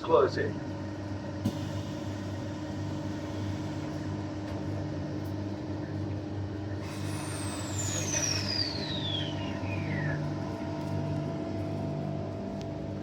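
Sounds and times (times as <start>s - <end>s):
train motor whine falling in pitch: 6.9s - 10.9s.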